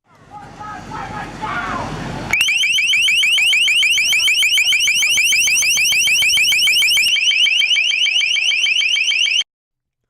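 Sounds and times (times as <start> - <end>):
high-pitched warning chirps: 2.3 - 9.4.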